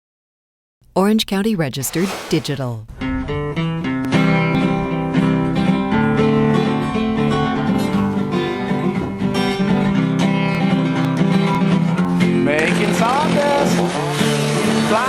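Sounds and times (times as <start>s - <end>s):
acoustic guitar strumming: 1.9s - 15.0s.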